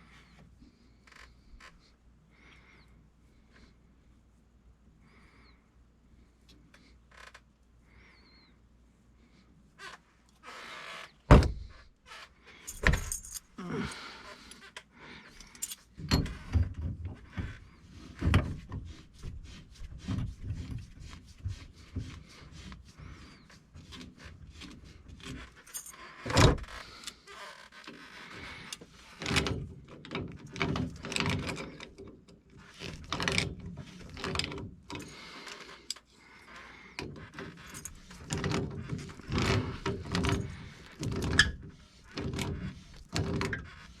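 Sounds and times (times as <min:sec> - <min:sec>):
metal tools clinking and knocking: 0:12.7 - 0:14.0, 0:15.4 - 0:16.4, 0:25.6 - 0:26.0, 0:37.6 - 0:41.4.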